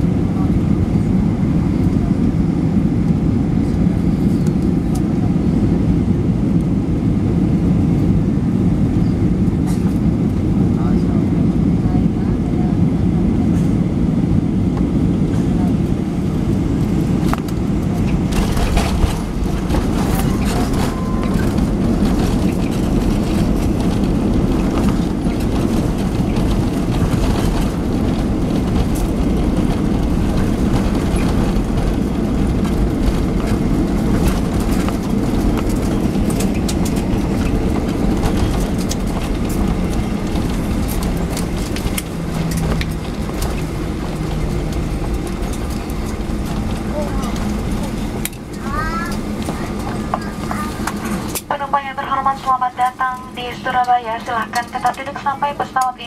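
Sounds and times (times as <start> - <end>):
jet engines rumbling: 0.0 - 56.0
wheels on runway: 15.4 - 52.5.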